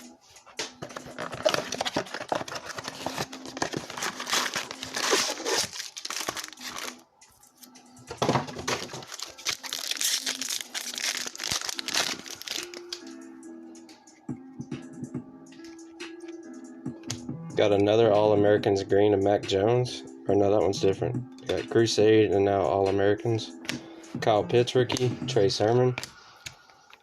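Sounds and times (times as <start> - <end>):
plastic wrappers crinkling and tearing: 0.9 - 7.0, 8.6 - 13.0.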